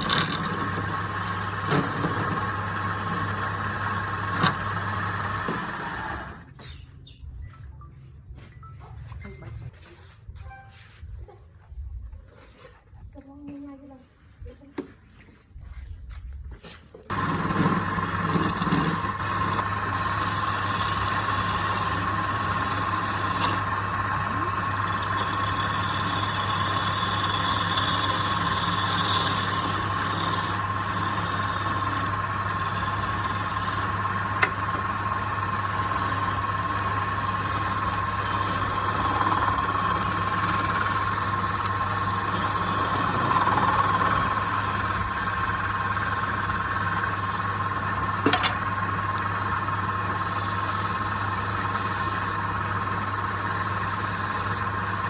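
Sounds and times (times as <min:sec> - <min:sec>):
power tool whining: 0:00.0 - 0:06.5, 0:17.1 - 0:55.0.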